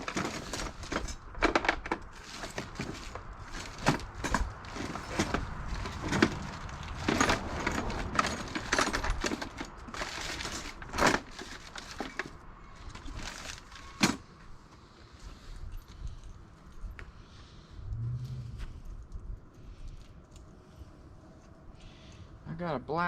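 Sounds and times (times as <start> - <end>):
tools being rummaged through: 0.0 - 14.3.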